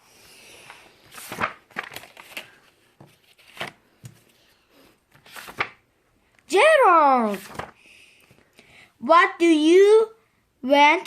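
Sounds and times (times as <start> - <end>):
pages turning: 0.6 - 5.8, 7.2 - 7.8.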